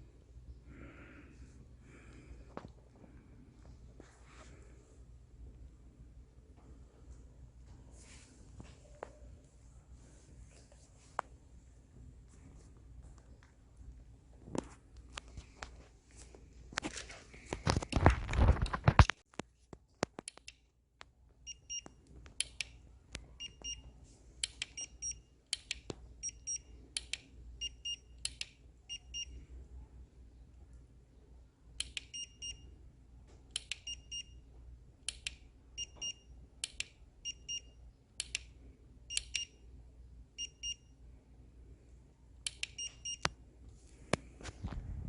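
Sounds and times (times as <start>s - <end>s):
steady low hum: 0.0s - 45.0s.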